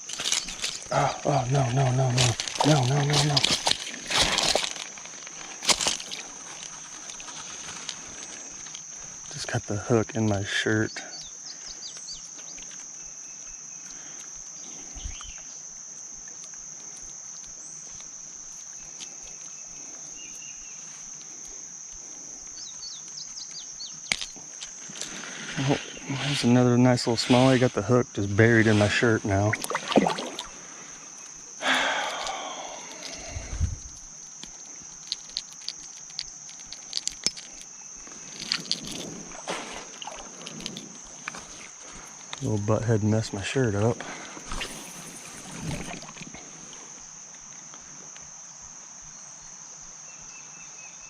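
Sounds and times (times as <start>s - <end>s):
small clicks and rustles: 0.0s - 0.9s, 2.1s - 9.3s, 33.8s - 42.5s
insects droning: 0.0s - 51.0s.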